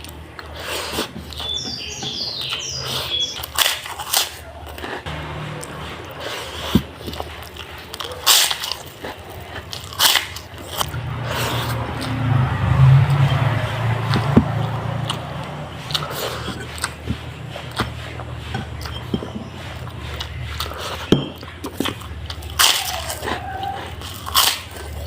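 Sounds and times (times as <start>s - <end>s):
bird chirping: 1.2s - 3.6s, 17.0s - 21.6s
crackers being bitten and chewed: 2.8s - 12.2s, 13.7s - 25.0s.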